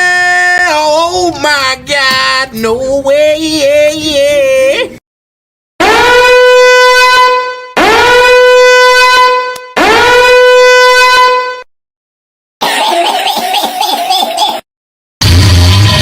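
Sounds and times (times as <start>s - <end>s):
comedic horn honks: 5.8s - 11.6s.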